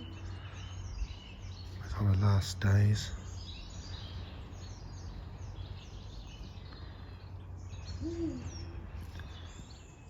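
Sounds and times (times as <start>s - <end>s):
small birds chirping and singing: 0.0s - 10.0s
steady low rumble: 0.0s - 10.0s
low hoot-like call: 8.0s - 8.8s.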